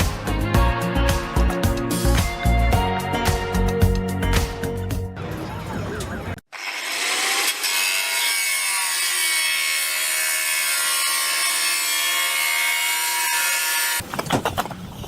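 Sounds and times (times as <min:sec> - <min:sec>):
power tool cutting with whine: 0:06.5 - 0:14.0.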